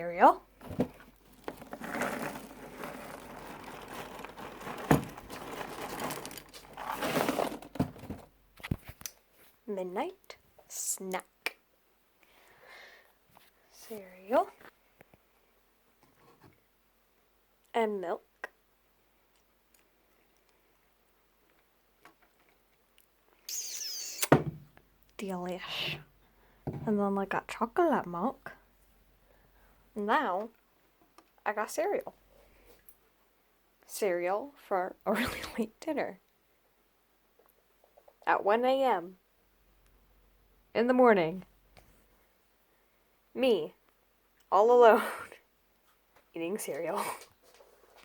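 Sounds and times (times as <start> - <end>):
cereal packaging crinkling: 1.1 - 7.8.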